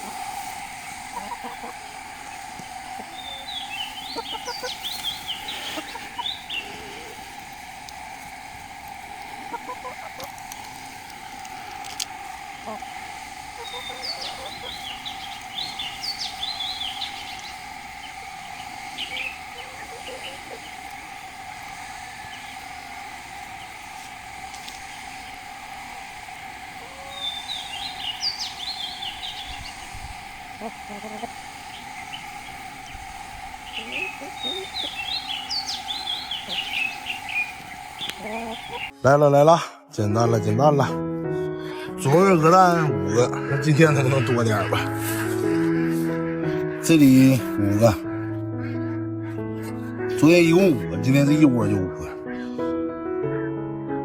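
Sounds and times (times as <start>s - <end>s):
chickens peeping: 0.0s - 39.0s
steady background drone: 0.0s - 39.0s
steady outdoor hum: 0.0s - 39.0s, 41.3s - 51.3s
small bird chirping: 0.8s - 8.2s, 8.9s - 39.0s.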